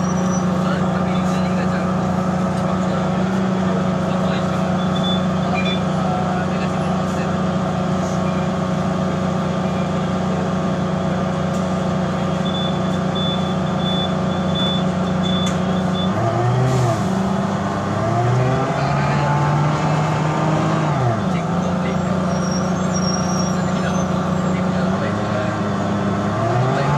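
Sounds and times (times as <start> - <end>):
bus engine running: 0.0 - 26.9
high beeps: 4.8 - 5.9, 12.4 - 16.3.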